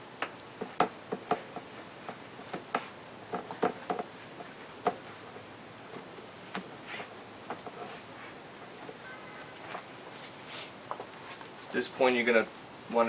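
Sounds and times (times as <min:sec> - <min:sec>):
bicycle tyre tapping against rim: 0:00.2 - 0:06.8.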